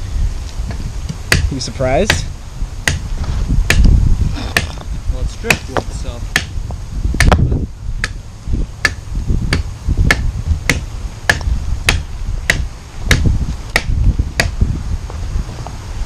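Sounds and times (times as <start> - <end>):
blade chopping hard wood: 1.2 - 4.8, 5.4 - 6.6, 7.2 - 8.2, 8.8 - 14.6.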